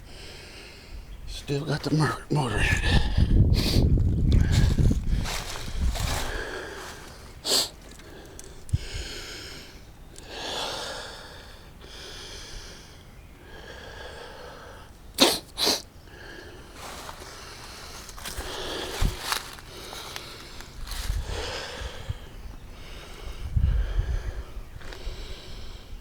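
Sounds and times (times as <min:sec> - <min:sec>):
person breathing: 0:00.0 - 0:01.1, 0:02.8 - 0:15.0, 0:16.1 - 0:26.0
person sniffing: 0:03.5 - 0:03.9, 0:06.3 - 0:07.8, 0:15.2 - 0:15.9.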